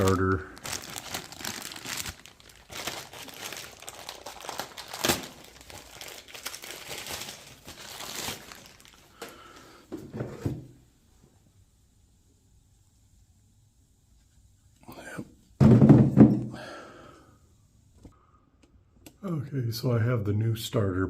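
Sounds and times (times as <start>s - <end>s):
packaging crinkling: 0.0s - 9.6s.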